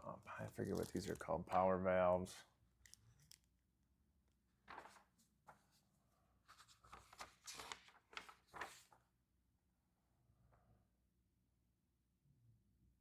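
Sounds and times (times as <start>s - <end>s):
rustling of small parts: 0.4s - 1.3s.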